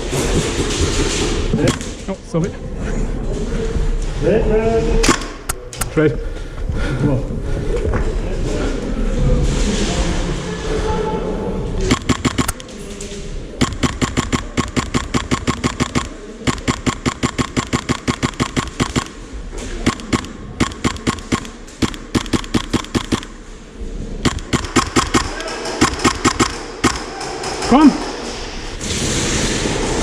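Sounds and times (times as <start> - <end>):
airsoft gun full-auto bursts: 11.9 - 12.7, 13.6 - 19.2, 19.8 - 23.5, 24.2 - 27.7.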